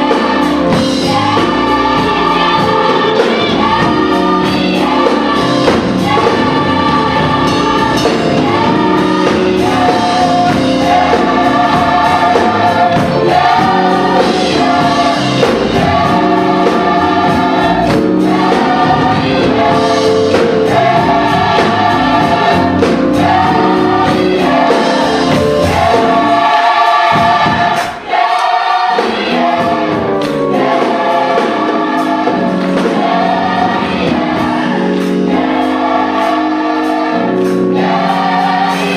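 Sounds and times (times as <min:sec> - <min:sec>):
choir singing in harmony: 0:00.0 - 0:38.9
live band accompaniment: 0:00.0 - 0:38.9.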